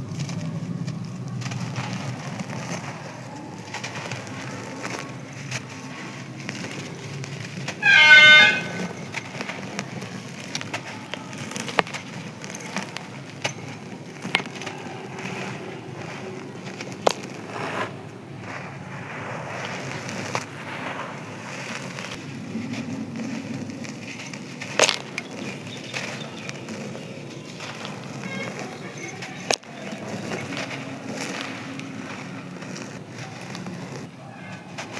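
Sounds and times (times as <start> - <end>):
cement chunks crumbling: 23.6 - 34.0.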